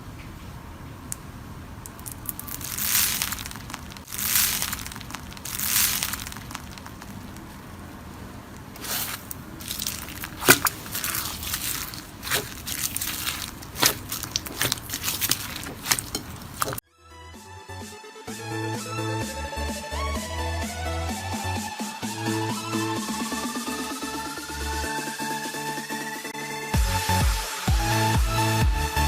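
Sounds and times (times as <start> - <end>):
slime crackling when squeezed: 1.9 - 7.7, 8.6 - 16.8.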